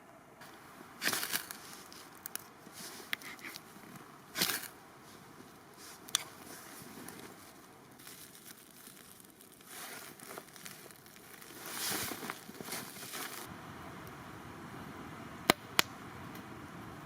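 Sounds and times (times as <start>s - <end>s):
rustling and crackling brush: 0.4s - 13.5s.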